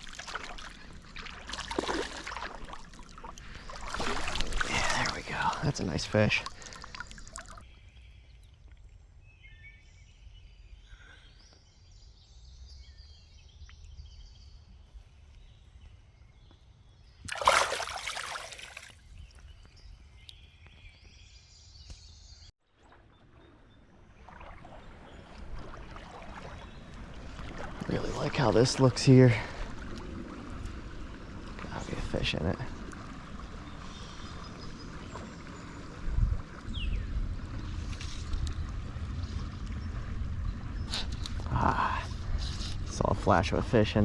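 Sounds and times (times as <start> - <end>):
water sloshing and running: 0.0 - 7.7, 17.3 - 19.2, 22.8 - 41.1
creek water rumble: 0.0 - 9.1, 17.3 - 20.4, 22.7 - 44.0
loud water splash: 17.3 - 19.0.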